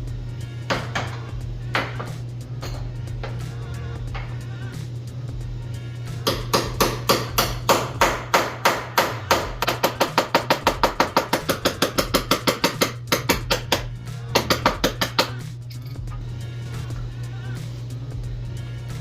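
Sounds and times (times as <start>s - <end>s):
hammer striking metal tool: 6.2s - 16.1s.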